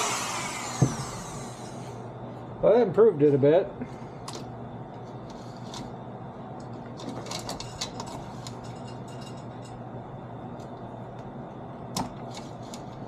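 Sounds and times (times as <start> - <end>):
steady low hum: 0.0 - 13.0
metallic clicks and rattles of chain: 7.3 - 9.8.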